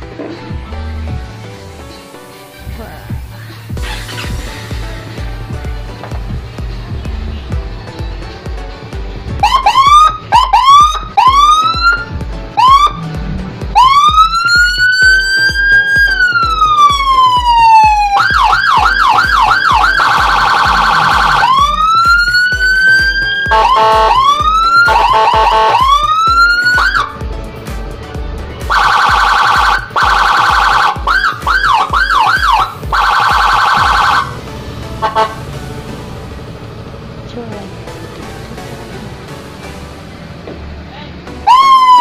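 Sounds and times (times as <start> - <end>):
music beat: 0.0 - 42.0
electronic police siren: 9.4 - 13.0, 13.8 - 27.1, 28.7 - 34.4, 41.5 - 42.0.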